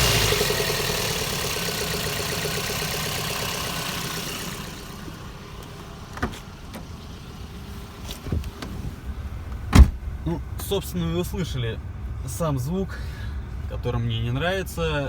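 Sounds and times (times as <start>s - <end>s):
car engine rumbling: 0.0s - 15.0s.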